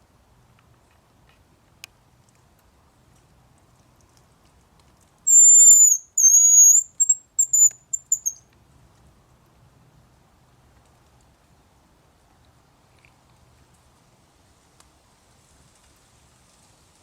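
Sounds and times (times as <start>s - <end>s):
grouse whistling song: 5.3s - 8.4s.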